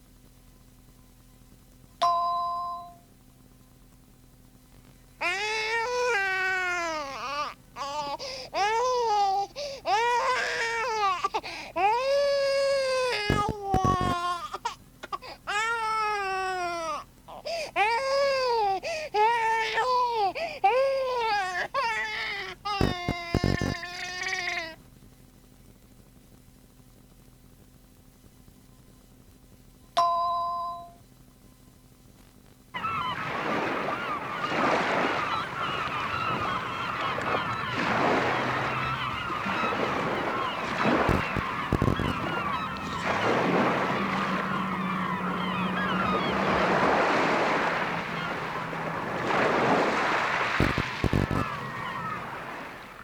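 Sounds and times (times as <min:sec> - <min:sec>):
electronic chime: 0:02.0 - 0:03.1, 0:30.0 - 0:31.0
gulls crying: 0:03.8 - 0:24.9, 0:32.7 - 0:53.0
baby crying: 0:05.2 - 0:24.8
ocean surf: 0:32.8 - 0:53.0.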